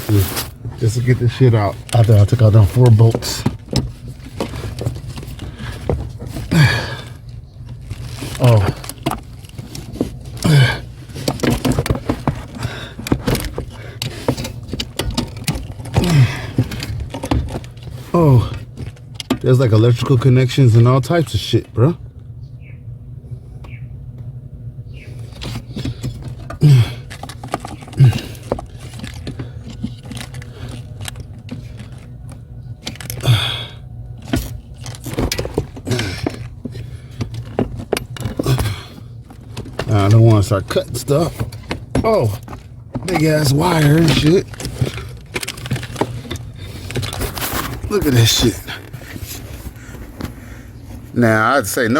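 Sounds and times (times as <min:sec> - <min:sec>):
scraping rustle: 0:00.0 - 0:19.2, 0:34.2 - 0:51.4
steady low hum: 0:00.0 - 0:51.9
person grunting: 0:06.5 - 0:07.1, 0:10.4 - 0:10.8, 0:16.0 - 0:16.6, 0:26.6 - 0:27.0, 0:28.0 - 0:28.4, 0:38.4 - 0:39.0
metal tools clinking and rattling: 0:34.2 - 0:49.6.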